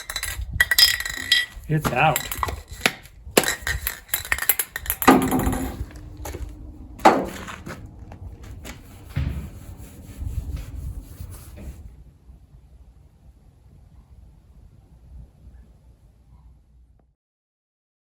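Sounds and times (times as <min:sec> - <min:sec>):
objects knocking and scraping: 0:00.0 - 0:11.9
heavy thuds: 0:04.7 - 0:12.0.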